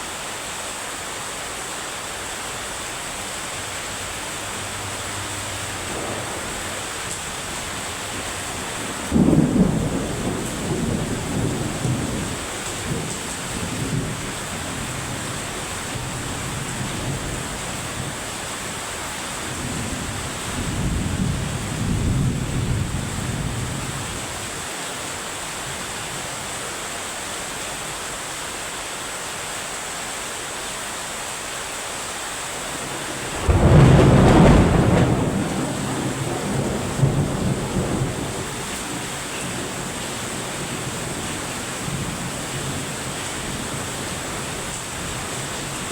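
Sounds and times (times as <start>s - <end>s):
heavy rain: 0.0s - 45.9s
thunder rumbling: 2.7s - 24.6s, 32.7s - 45.9s
loud thunderclap: 3.4s - 24.1s, 32.8s - 45.9s.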